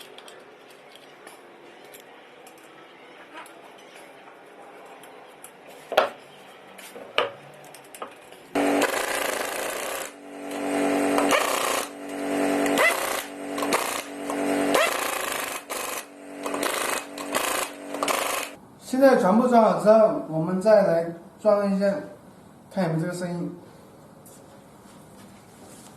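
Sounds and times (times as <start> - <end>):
impact wrench bursts: 8.6 - 18.6.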